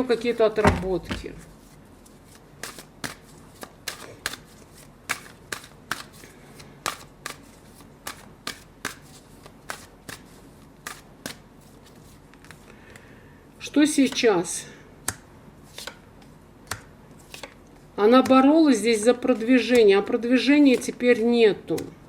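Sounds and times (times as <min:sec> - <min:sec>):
cards being shuffled: 0:00.8 - 0:12.7, 0:16.7 - 0:17.6.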